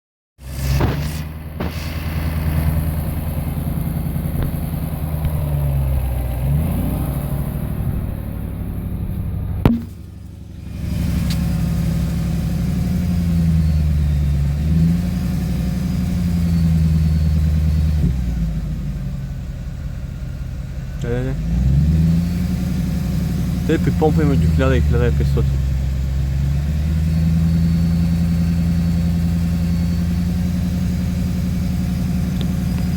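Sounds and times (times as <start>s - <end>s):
car engine idling: 0.4s - 32.9s
sharp click: 9.6s - 10.0s.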